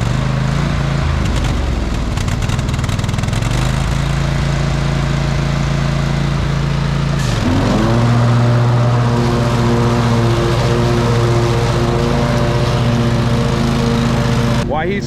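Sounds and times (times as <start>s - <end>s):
lawn mower engine running: 0.0s - 15.0s
rapid ticking and clattering: 1.1s - 4.3s.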